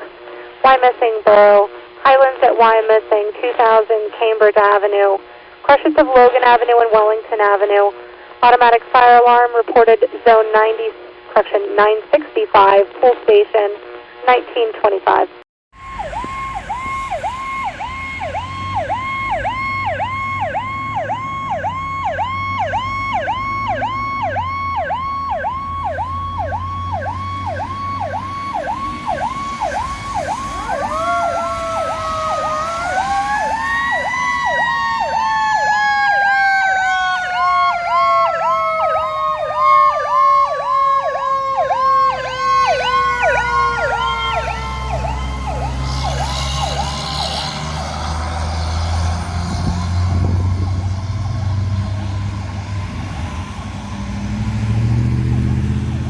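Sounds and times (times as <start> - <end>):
electronic siren warbling: 15.8 - 55.9
mechanical siren winding up and down: 15.8 - 56.0.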